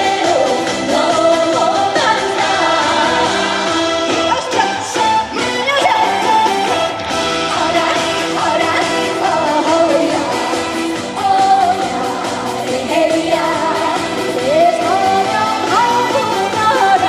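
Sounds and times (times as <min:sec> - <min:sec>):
band playing: 0:00.0 - 0:17.0
woman singing: 0:00.0 - 0:17.0.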